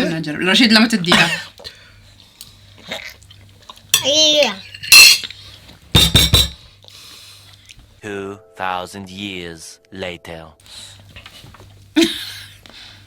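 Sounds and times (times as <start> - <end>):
cutlery clinking against dishes: 4.0 - 5.3, 6.0 - 6.6.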